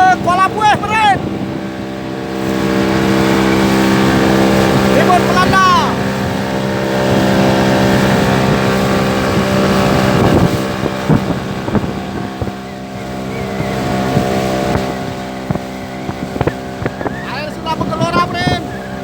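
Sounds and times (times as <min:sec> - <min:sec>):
boat motor running: 0:00.0 - 0:19.0
waves splashing against hull: 0:00.0 - 0:19.0
wind on microphone: 0:00.0 - 0:19.0.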